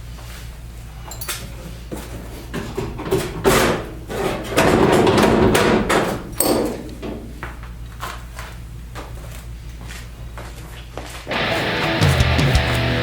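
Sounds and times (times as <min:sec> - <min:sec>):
metal rattling clatter: 0:02.5 - 0:07.4
metal knocking: 0:02.5 - 0:07.6.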